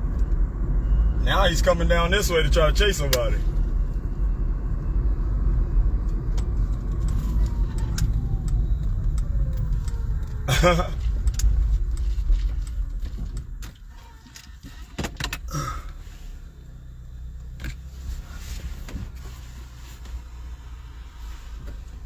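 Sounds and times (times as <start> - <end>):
car engine and road noise: 0.0 - 22.0.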